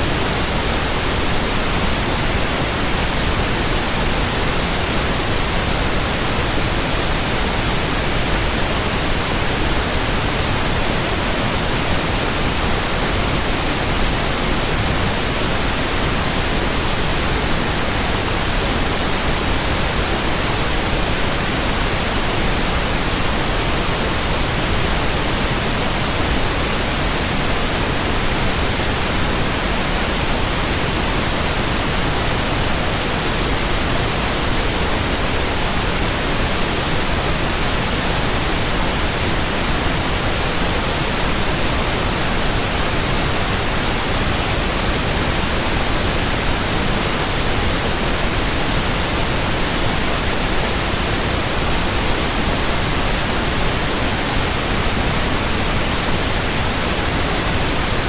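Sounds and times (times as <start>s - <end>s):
white noise hiss: 0.0s - 58.0s.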